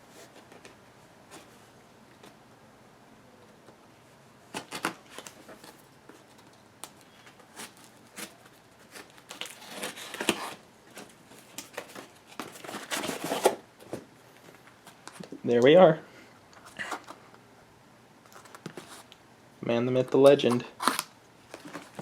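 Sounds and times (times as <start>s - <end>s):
packaging crinkling and tearing: 4.5s - 13.6s, 20.5s - 22.0s.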